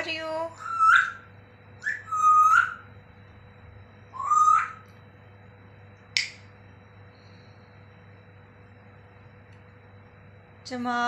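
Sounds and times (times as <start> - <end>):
parrot whistling: 0.5 - 2.9, 4.1 - 4.9
sharp click: 6.1 - 6.4.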